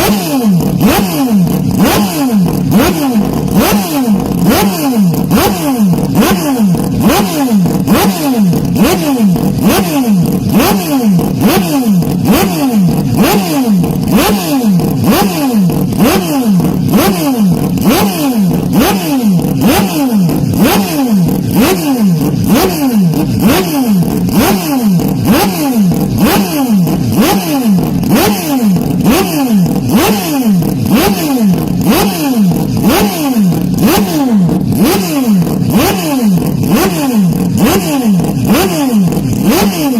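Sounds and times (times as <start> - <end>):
motocross bike engines revving: 0.0 - 39.9.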